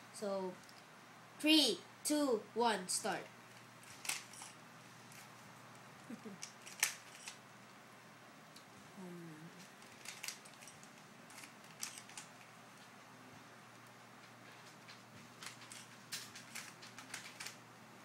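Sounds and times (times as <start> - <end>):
puzzle cube plastic clicks: 3.9 - 4.5, 6.4 - 7.4, 9.8 - 12.5, 15.4 - 17.6.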